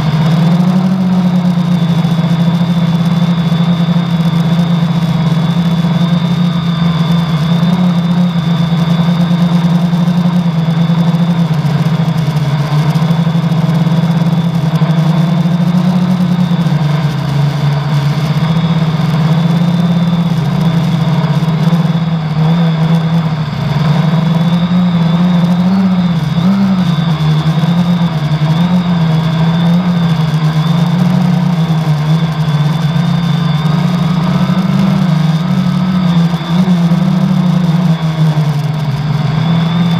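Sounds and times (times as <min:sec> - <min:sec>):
drone motors humming: 0:00.0 - 0:39.9
high whine: 0:00.0 - 0:39.9.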